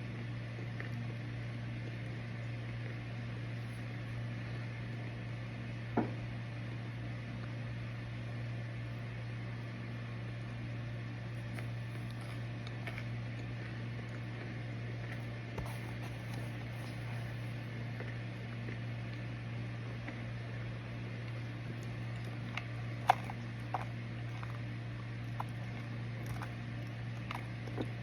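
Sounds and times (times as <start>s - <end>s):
fan noise: 0.0s - 28.0s
microwave oven humming: 0.0s - 28.0s.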